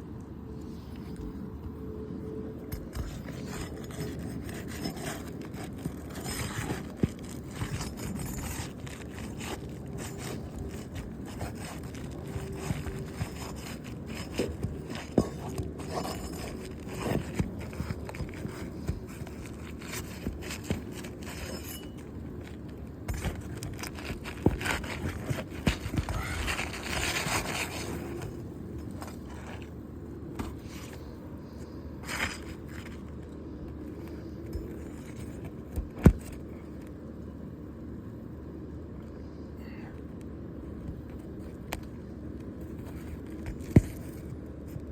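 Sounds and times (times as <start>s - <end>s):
roof shingles scraping: 2.9s - 29.7s.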